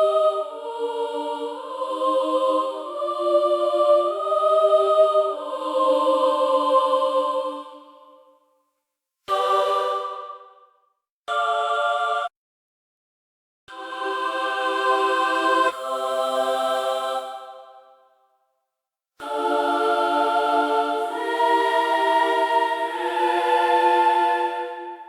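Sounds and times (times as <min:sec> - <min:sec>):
wordless choir chords: 0:00.0 - 0:08.2, 0:09.3 - 0:10.5, 0:13.7 - 0:18.0, 0:19.2 - 0:25.0.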